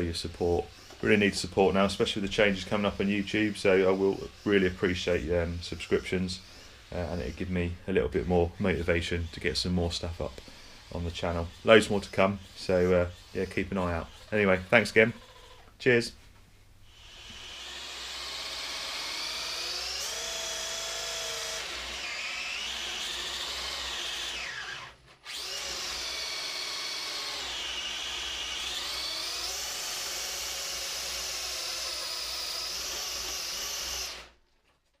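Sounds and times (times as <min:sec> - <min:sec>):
electric motor whining: 0:16.9 - 0:34.4.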